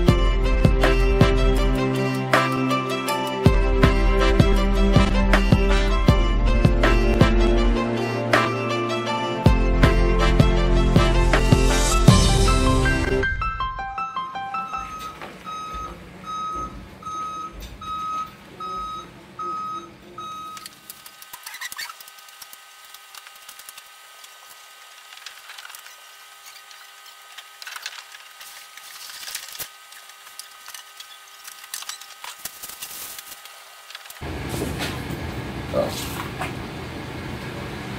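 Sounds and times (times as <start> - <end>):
background music: 0.0 - 15.2.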